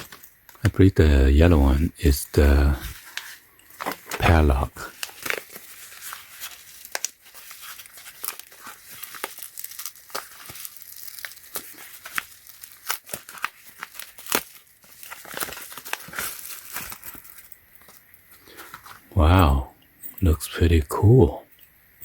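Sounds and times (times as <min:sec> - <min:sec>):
packaging crinkling and tearing: 0:00.0 - 0:00.7, 0:02.8 - 0:19.1.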